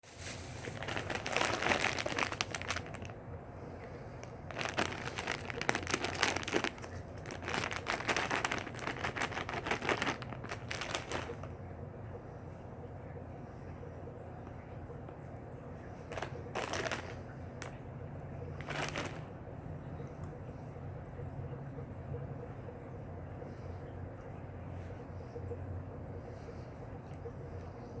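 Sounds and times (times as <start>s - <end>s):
candy packaging crinkling: 0.0s - 11.6s, 16.0s - 17.8s, 18.6s - 19.4s.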